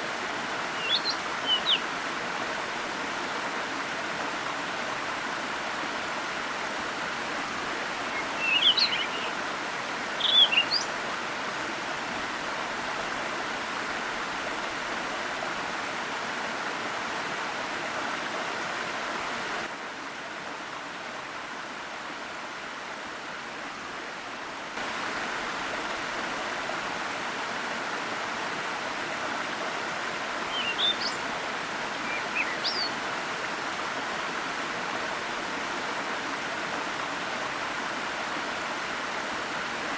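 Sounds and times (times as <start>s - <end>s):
waterfall cascading water: 0.0s - 39.9s
songbird chirping: 0.7s - 1.9s, 8.0s - 9.4s, 10.2s - 10.9s, 30.4s - 31.2s, 31.9s - 33.0s.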